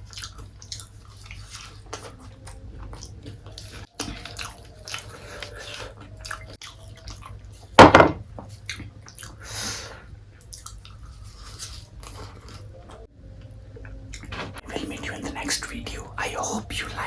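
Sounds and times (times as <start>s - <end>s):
wet chewing: 0.0s - 7.7s, 8.5s - 9.7s, 10.4s - 13.1s
loud bite or knock: 7.8s - 8.2s.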